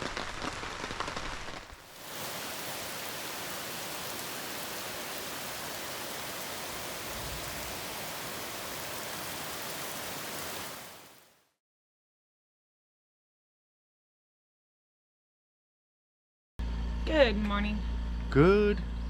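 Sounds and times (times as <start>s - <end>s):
steady rainfall: 1.0s - 11.4s.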